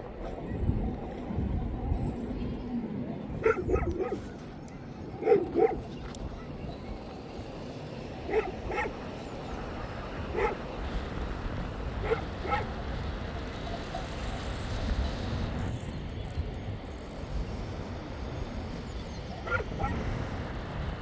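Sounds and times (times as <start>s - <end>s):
low rush of wind: 0.0s - 21.0s
dog barking: 3.4s - 4.4s, 5.2s - 6.0s, 8.2s - 9.0s, 10.3s - 10.7s, 12.0s - 12.7s, 19.4s - 20.1s.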